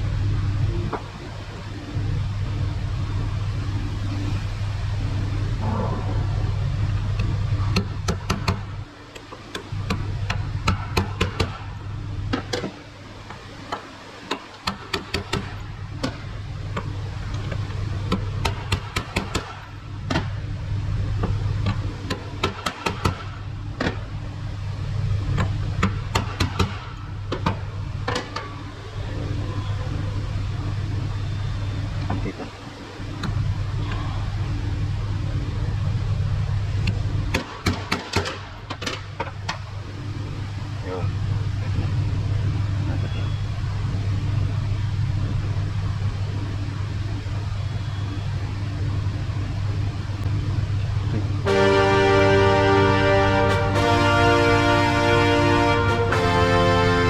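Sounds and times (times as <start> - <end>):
steady low hum: 0.0 - 22.5, 39.3 - 57.0.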